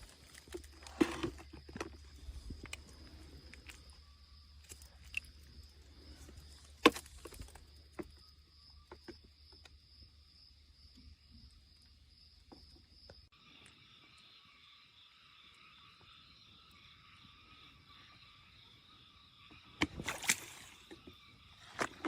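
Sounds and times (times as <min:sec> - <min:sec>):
insect chorus: 0:00.0 - 0:22.0.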